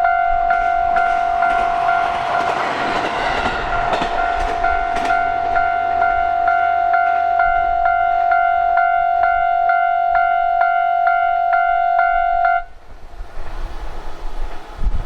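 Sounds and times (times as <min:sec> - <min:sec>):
wind rumble noise: 0:00.0 - 0:09.6, 0:12.2 - 0:15.0
level crossing warning bell: 0:00.0 - 0:12.7.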